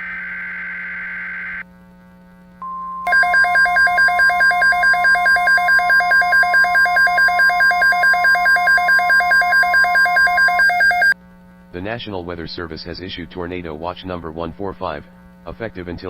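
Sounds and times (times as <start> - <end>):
steady single-pitch warning tone: 2.6 - 11.2
two-pitch electronic alarm: 3.0 - 11.2.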